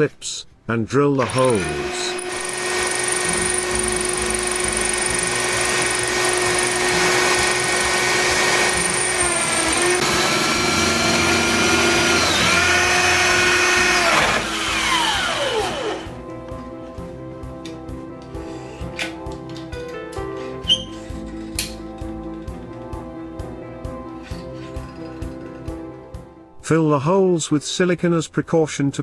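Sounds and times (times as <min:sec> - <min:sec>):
electric drill drilling into wall: 0:01.2 - 0:16.2.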